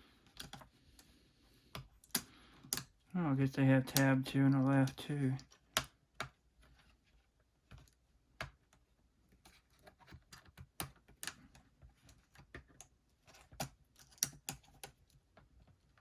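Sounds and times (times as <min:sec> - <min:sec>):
plastic keyboard clicks and taps: 0:00.3 - 0:00.7, 0:01.7 - 0:03.0, 0:07.7 - 0:08.8, 0:10.0 - 0:15.4.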